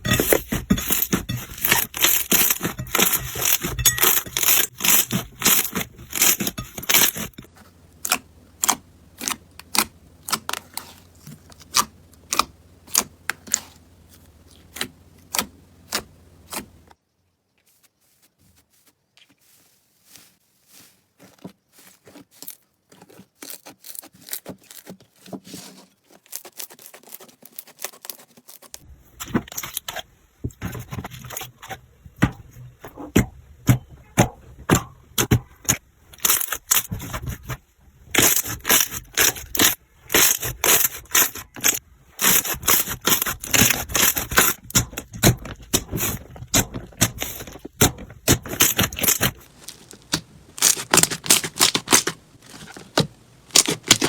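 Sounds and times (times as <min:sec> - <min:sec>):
slime crackling and popping: 0:48.2 - 0:52.1.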